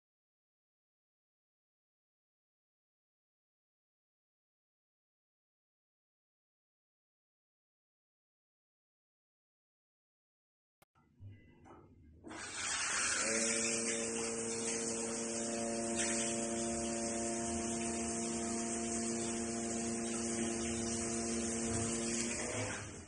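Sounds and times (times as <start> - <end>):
water heater pump humming: 12.2 - 23.0
water spraying from shower head: 12.3 - 23.0.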